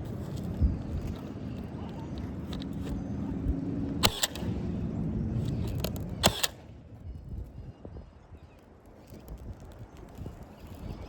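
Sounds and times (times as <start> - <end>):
nail gun firing: 4.0 - 4.5, 6.2 - 6.6.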